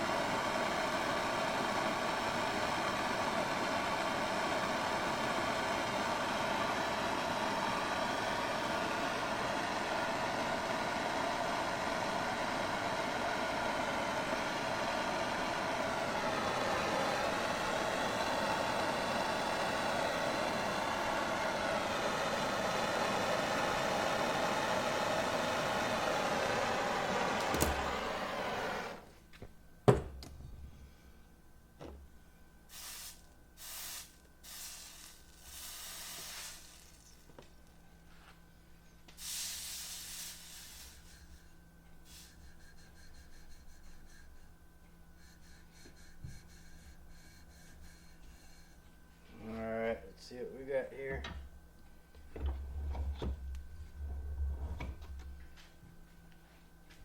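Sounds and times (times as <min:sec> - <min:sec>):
torch flame hissing: 0:00.0 - 0:29.1, 0:32.7 - 0:37.6, 0:39.1 - 0:44.5
short hissing bursts: 0:32.7 - 0:37.3, 0:39.1 - 0:48.9.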